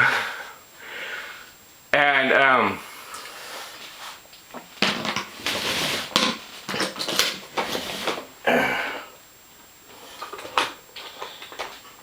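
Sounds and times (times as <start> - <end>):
hard objects clattering and scraping: 4.6 - 8.3.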